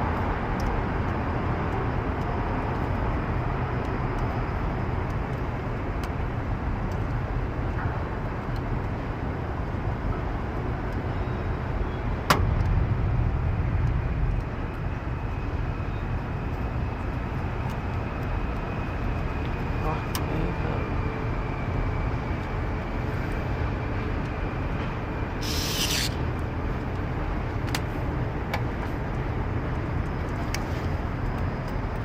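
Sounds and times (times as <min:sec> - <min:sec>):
low rumble of city traffic: 0:00.0 - 0:32.0
sharp click: 0:25.4 - 0:26.2.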